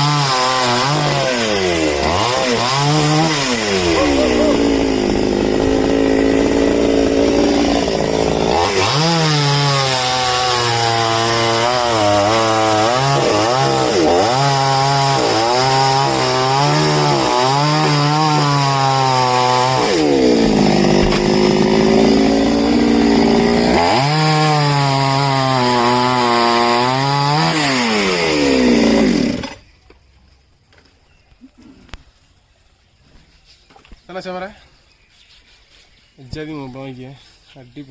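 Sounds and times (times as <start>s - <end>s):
chainsaw cutting wood: 0.0s - 29.7s.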